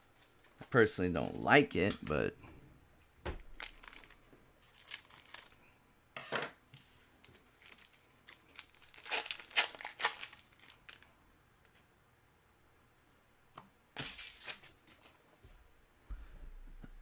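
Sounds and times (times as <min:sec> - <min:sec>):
packaging being torn and crinkled: 0:03.5 - 0:05.6, 0:07.5 - 0:11.1, 0:14.0 - 0:15.2.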